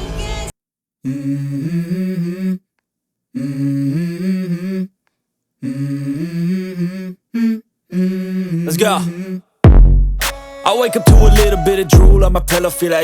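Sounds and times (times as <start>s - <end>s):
person humming: 1.0s - 2.6s, 3.4s - 5.0s, 5.6s - 9.5s, 10.7s - 13.0s.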